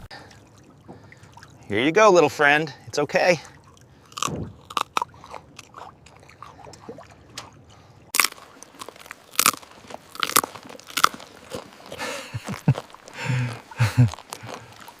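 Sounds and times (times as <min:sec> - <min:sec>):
puppy crunching dry treats: 0:04.1 - 0:06.6, 0:08.2 - 0:15.0.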